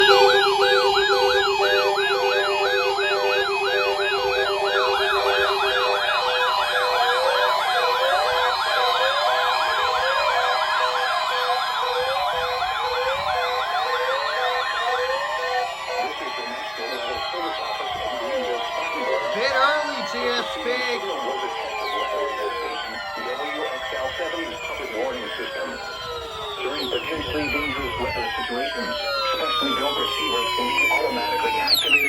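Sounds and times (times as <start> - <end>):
pulsing beep: 0.0 - 9.4, 15.7 - 32.0
electronic siren alarms: 0.0 - 32.0.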